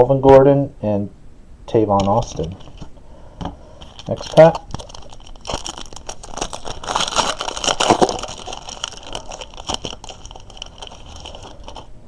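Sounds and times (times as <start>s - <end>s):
wrapper tearing and crinkling: 2.0s - 2.9s, 3.8s - 11.9s.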